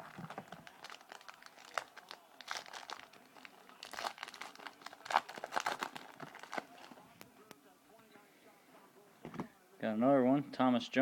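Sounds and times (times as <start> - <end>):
wrapper crinkling: 0.0 - 7.0.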